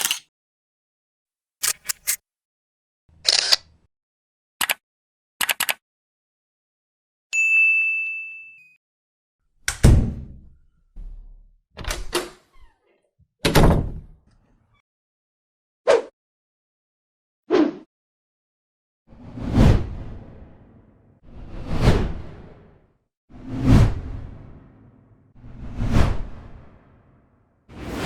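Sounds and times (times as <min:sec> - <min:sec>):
sharp clicks: 0:01.6 - 0:02.2
bright ding: 0:07.4 - 0:08.8.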